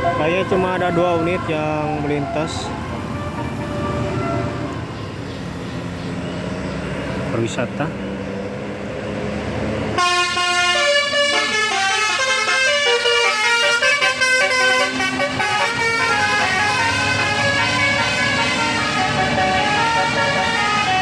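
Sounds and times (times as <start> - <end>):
bus engine: 0.0 - 21.0
multi-tone air horn tune: 10.0 - 21.0.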